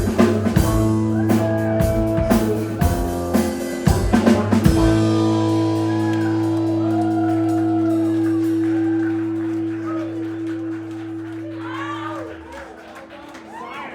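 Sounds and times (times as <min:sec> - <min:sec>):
drum hits: 0:00.0 - 0:11.2
band chord ringing out: 0:00.0 - 0:12.5
audience voices and whoops: 0:05.4 - 0:13.9.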